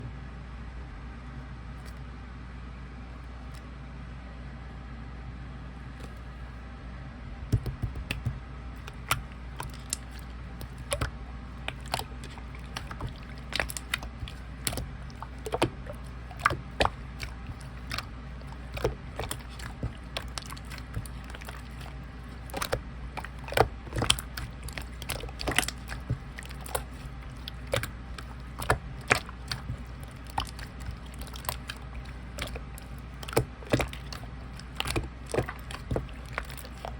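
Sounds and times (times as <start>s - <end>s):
steady low hum: 0.0s - 36.9s
slime squishing with wet pops: 7.5s - 36.9s.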